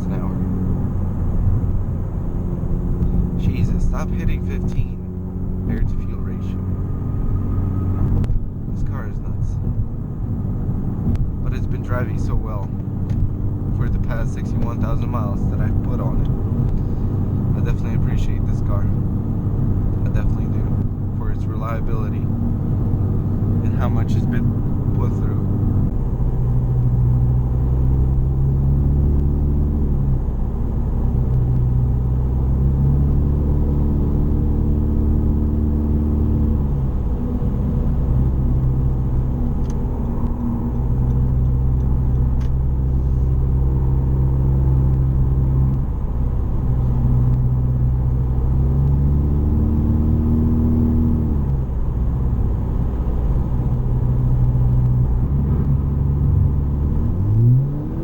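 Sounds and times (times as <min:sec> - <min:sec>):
car exhaust droning: 0:00.0 - 0:58.0.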